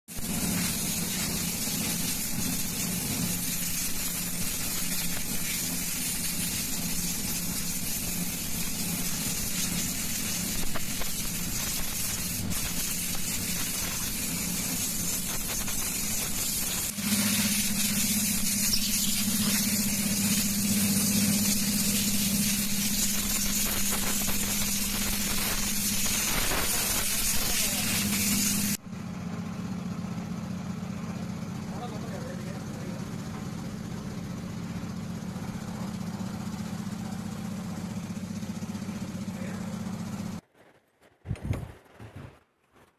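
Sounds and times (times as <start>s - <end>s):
hydraulic hiss: 0.1s - 28.8s.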